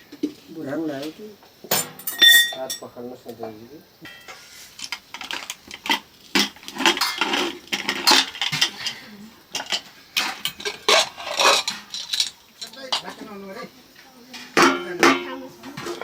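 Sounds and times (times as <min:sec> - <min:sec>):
dishes and utensils clinking: 0:01.7 - 0:03.0, 0:04.0 - 0:13.4, 0:14.3 - 0:16.0.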